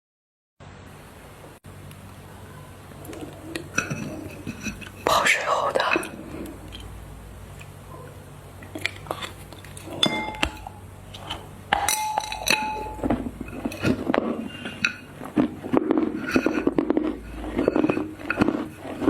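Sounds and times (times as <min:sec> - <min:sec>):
chocolate cracking and crunching: 0:08.6 - 0:10.6, 0:13.0 - 0:19.0
object clinking on glass dish: 0:10.0 - 0:10.8, 0:11.8 - 0:13.2.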